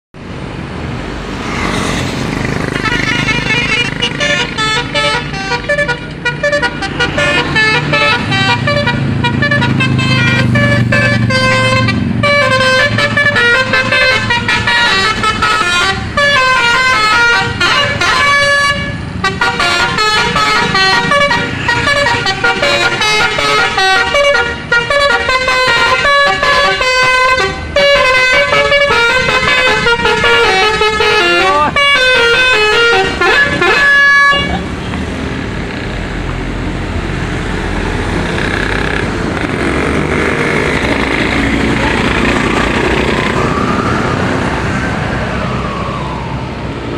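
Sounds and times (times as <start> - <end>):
vehicle engine rumbling: 0.2 - 46.9
multi-tone bus horn melody: 2.7 - 34.9.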